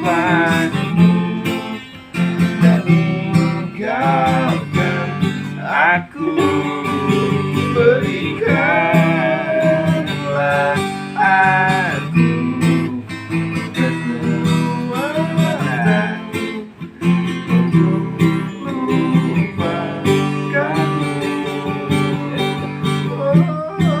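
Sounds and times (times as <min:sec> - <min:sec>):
acoustic guitar music: 0:00.0 - 0:24.0.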